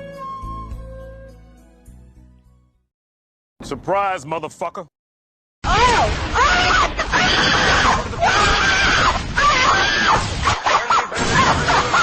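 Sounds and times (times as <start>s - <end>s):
child screaming and wailing: 5.7s - 10.2s.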